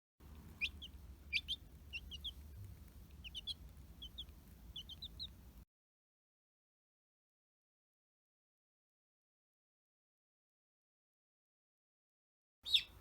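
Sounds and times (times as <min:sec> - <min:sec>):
chick peeping: 0:00.2 - 0:05.6, 0:12.7 - 0:13.0.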